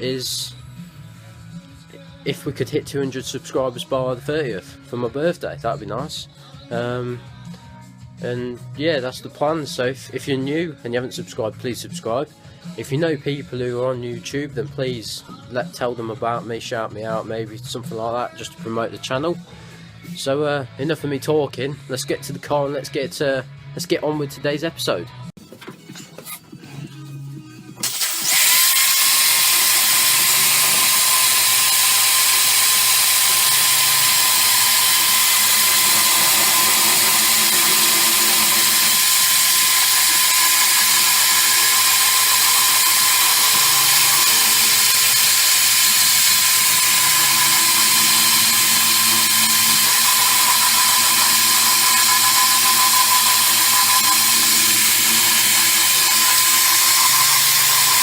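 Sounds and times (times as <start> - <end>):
wire brush grinding steel: 25.9 - 58.0.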